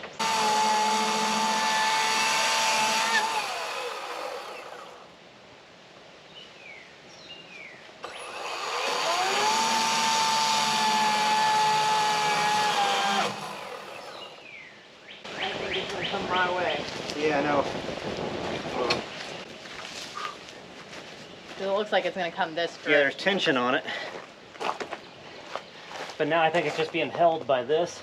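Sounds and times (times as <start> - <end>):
electric saw cutting branch: 0.0 - 5.1, 8.0 - 14.4.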